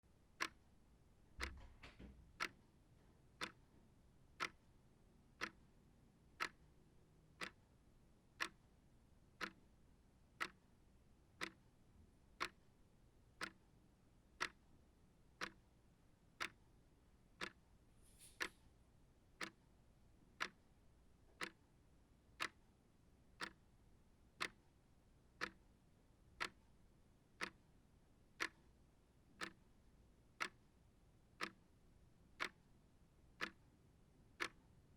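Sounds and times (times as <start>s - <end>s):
clock ticking: 0.4s - 0.6s, 2.4s - 2.6s, 3.4s - 3.7s, 4.4s - 4.7s, 5.4s - 5.7s, 6.4s - 6.7s, 7.4s - 7.6s, 8.4s - 8.7s, 9.4s - 9.7s, 10.4s - 10.7s, 11.4s - 11.7s, 12.4s - 12.7s, 13.4s - 13.6s, 14.4s - 14.6s, 15.4s - 15.7s, 16.4s - 16.7s, 17.4s - 17.7s, 19.4s - 19.7s, 20.4s - 20.7s, 21.3s - 21.7s, 22.4s - 22.7s, 23.4s - 23.6s, 24.4s - 24.7s, 25.4s - 25.7s, 26.4s - 26.8s, 27.4s - 27.7s, 28.4s - 28.8s, 29.4s - 29.7s, 30.4s - 30.7s, 31.4s - 31.6s, 32.4s - 32.7s, 33.4s - 33.7s, 34.4s - 34.7s.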